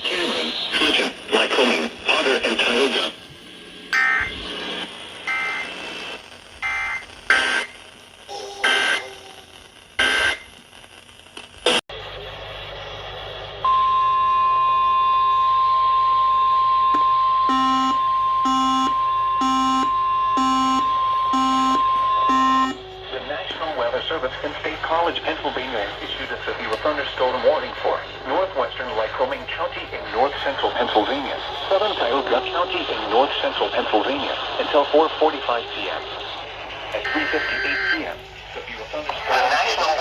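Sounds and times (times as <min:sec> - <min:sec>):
radio static: 0:00.0 - 0:13.8, 0:18.5 - 0:40.0
steady warning alarm tone: 0:03.9 - 0:04.4, 0:05.2 - 0:06.0, 0:06.6 - 0:10.5, 0:13.6 - 0:34.0, 0:37.0 - 0:39.0.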